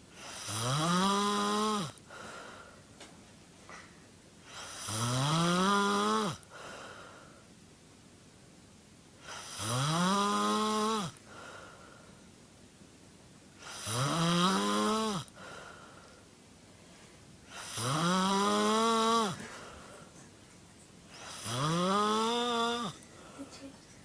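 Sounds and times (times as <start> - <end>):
person snoring: 0.2 - 2.0, 4.6 - 6.4, 9.3 - 11.2, 13.6 - 15.3, 17.5 - 19.7, 21.2 - 23.5.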